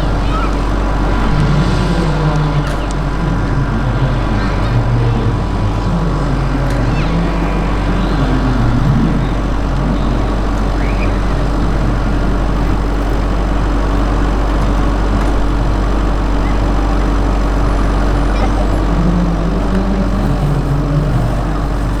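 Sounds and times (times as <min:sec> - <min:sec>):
low rotor drone: 0:00.0 - 0:22.0.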